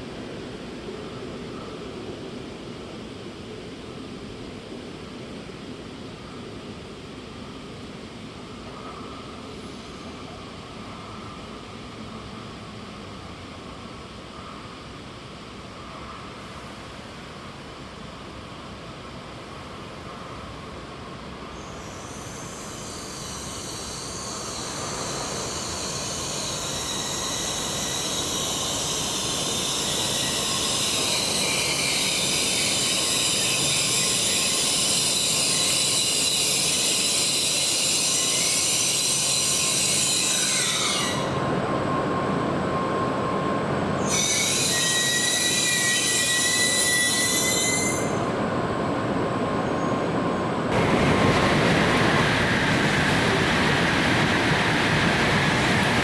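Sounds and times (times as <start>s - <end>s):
train wheel squeal: 8.8s - 10.4s, 21.4s - 48.6s, 49.4s - 56.0s
train rushing and rumbling: 14.8s - 56.0s.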